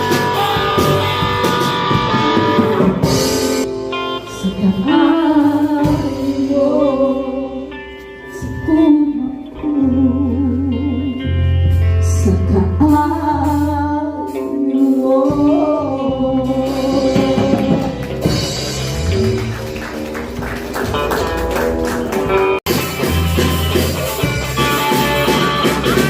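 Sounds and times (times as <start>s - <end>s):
person singing with vibrato: 0.0s - 18.4s
gospel band playing live: 0.0s - 26.0s.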